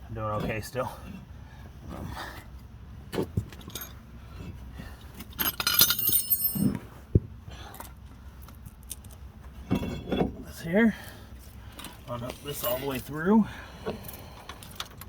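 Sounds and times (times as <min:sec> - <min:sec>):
metal parts clinking and jangling: 0:03.4 - 0:04.5, 0:05.2 - 0:06.8.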